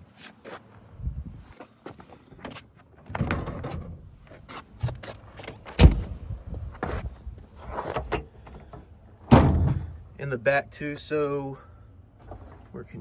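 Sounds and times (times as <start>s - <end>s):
car door knocks and clunks: 9.3s - 10.0s.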